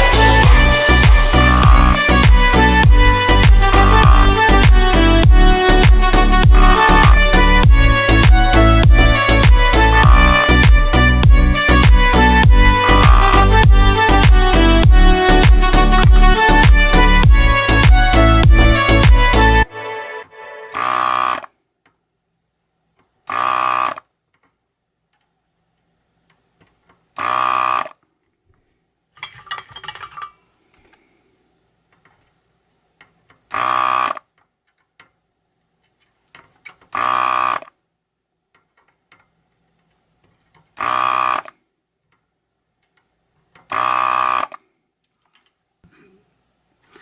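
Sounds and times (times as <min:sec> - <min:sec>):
desoldering pump buzzing: 0:00.0 - 0:19.6.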